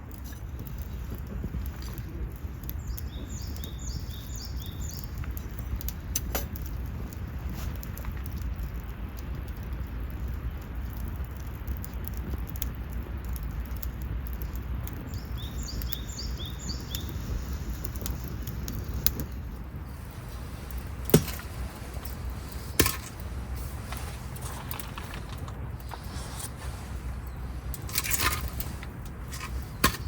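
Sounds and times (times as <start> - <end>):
low background rumble: 0.0 - 30.0
bird chirping: 15.1 - 17.3.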